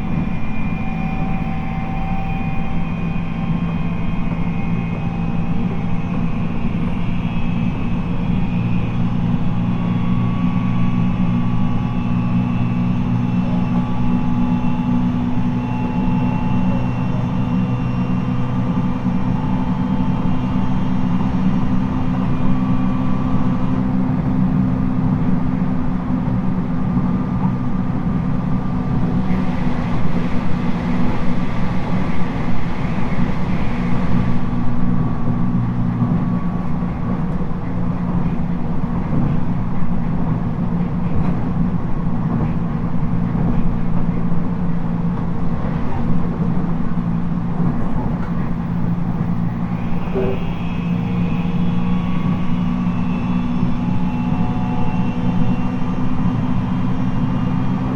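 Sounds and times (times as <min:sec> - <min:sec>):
train motor and gear hum: 0:00.0 - 0:57.9
wheels rumbling on rails: 0:00.0 - 0:57.9
high whine: 0:28.6 - 0:41.0, 0:47.8 - 0:57.9.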